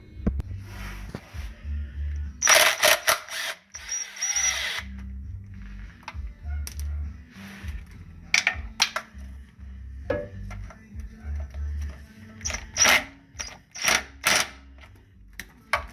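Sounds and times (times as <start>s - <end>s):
music with bass beat: 0.0s - 2.4s, 4.8s - 13.6s
sharp metallic clicks: 2.4s - 4.6s, 12.4s - 14.6s
power tool bursts: 2.4s - 4.9s.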